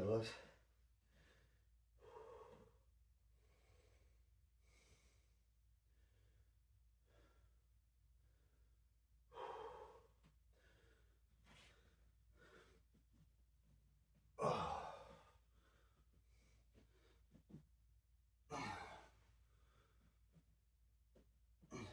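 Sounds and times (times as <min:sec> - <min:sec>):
man breathing hard: 0:01.0 - 0:07.6, 0:08.2 - 0:13.2.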